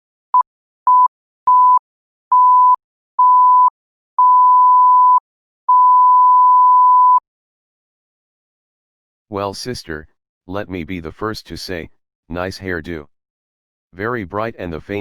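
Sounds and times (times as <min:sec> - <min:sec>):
electronic beep tone: 0:00.9 - 0:07.2.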